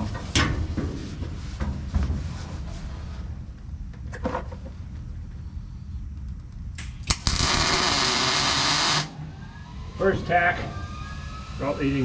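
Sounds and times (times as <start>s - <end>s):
welding arc crackling hiss: 6.8s - 9.2s.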